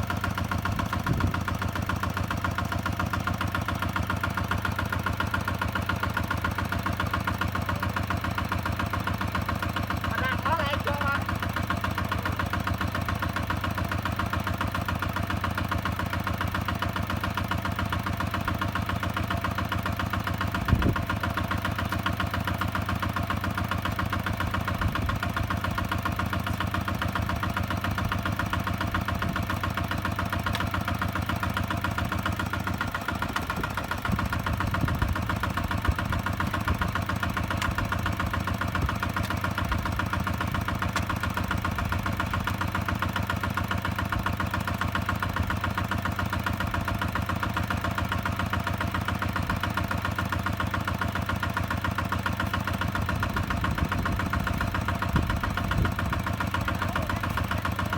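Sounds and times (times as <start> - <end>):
diesel tractor engine chugging: 0.0 - 57.9.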